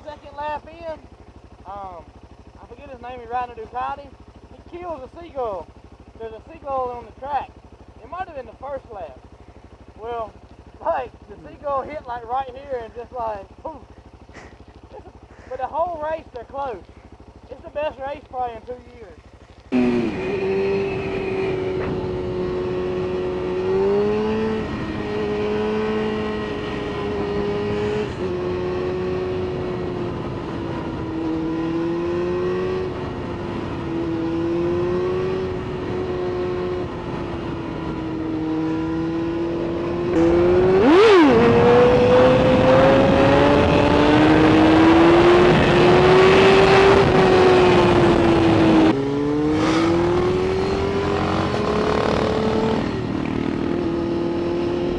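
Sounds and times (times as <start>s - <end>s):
motorcycle engine revving: 0.0s - 54.9s
wind rush: 45.4s - 53.9s.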